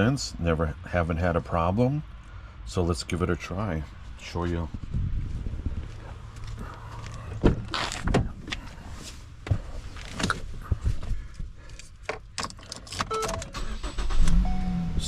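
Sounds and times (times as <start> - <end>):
car door and handling clicks: 12.1 - 14.7.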